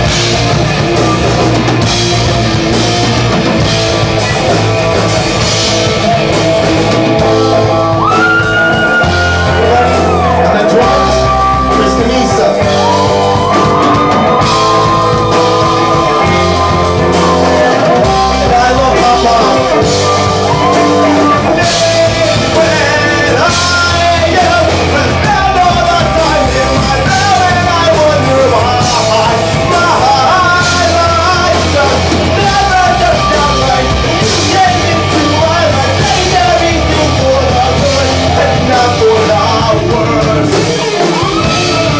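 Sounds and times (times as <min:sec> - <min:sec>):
rock music with singing: 0:00.0 - 0:41.9.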